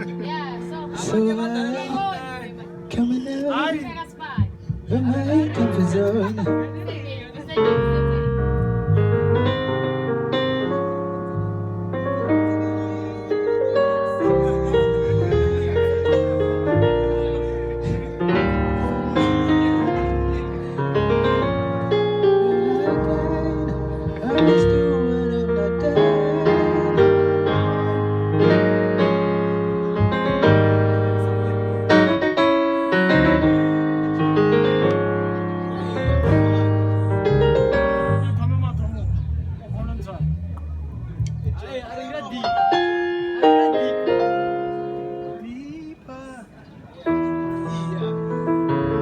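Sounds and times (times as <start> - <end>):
piano chords: 0.0 - 46.0, 46.9 - 49.0
bass line: 4.4 - 41.9.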